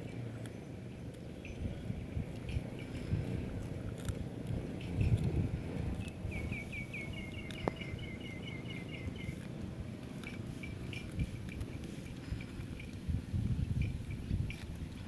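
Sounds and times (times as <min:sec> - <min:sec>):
low outdoor rumble: 0:00.0 - 0:15.0
small bird chirping: 0:06.0 - 0:09.5.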